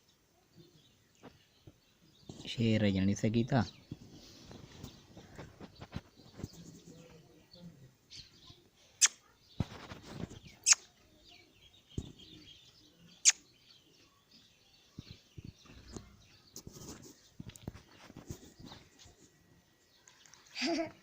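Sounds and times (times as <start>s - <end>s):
faint high bird chirping: 0.0s - 20.8s
loud sharp bird calls: 9.0s - 16.6s.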